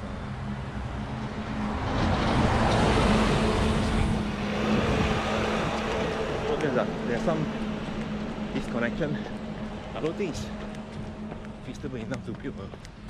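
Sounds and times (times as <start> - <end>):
car passing close by: 1.5 - 11.6.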